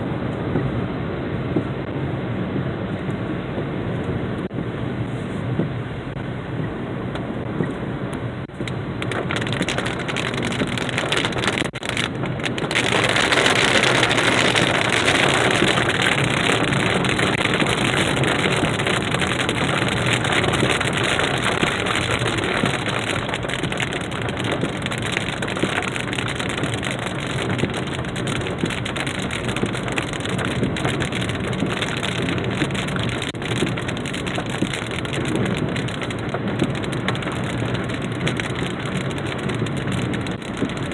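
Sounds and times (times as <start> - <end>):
heavy rain pouring: 0.0 - 40.9.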